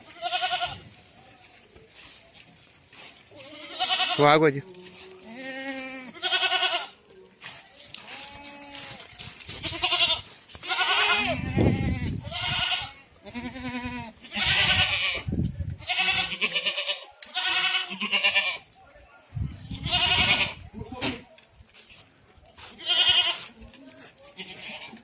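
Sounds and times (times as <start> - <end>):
goats bleating: 0.0 - 1.0, 3.0 - 7.0, 7.9 - 18.7, 19.6 - 21.2, 22.6 - 23.6, 24.2 - 25.0.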